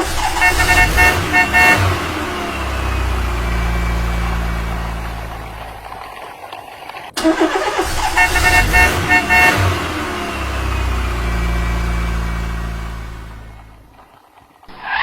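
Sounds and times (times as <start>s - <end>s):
vehicle horn honking: 0.0s - 5.1s, 7.4s - 13.6s
engine droning: 0.0s - 15.0s.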